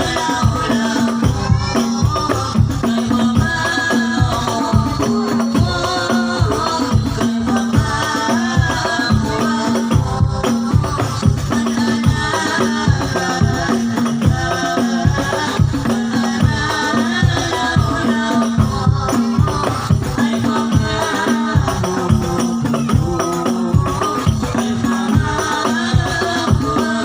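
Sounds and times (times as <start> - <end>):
hand drums beating: 0.0 - 27.0
person singing: 0.0 - 27.0.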